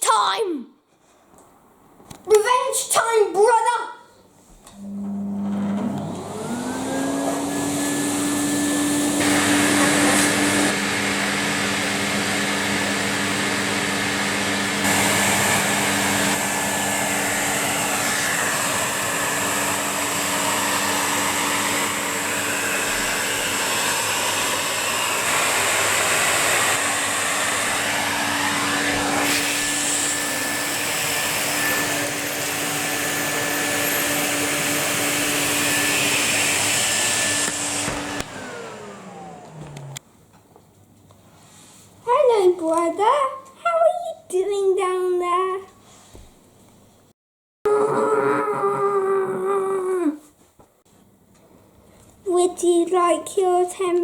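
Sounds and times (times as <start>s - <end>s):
vacuum cleaner running: 4.7s - 40.0s.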